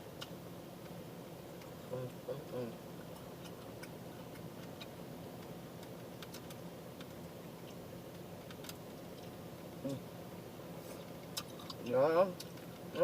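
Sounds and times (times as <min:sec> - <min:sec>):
low steady hum: 0:00.0 - 0:13.0
mouth chewing clicks and smacks: 0:03.0 - 0:09.4, 0:11.0 - 0:12.9.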